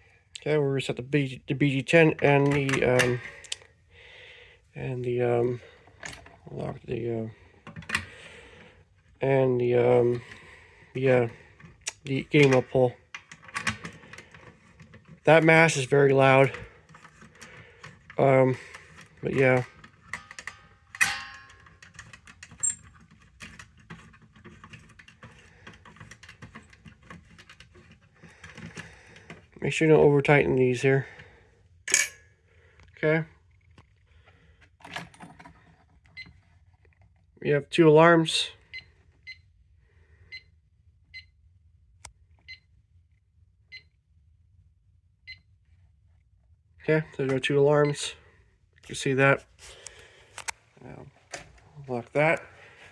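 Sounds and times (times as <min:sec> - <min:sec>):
small metal parts clicking and rattling: 0:18.7 - 0:29.3.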